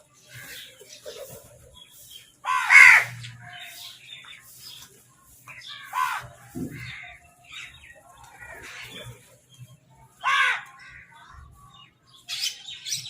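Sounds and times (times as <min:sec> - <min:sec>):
soft bird calls: 0:00.0 - 0:13.0
crows cawing: 0:02.4 - 0:03.8, 0:05.6 - 0:07.2, 0:10.2 - 0:11.3.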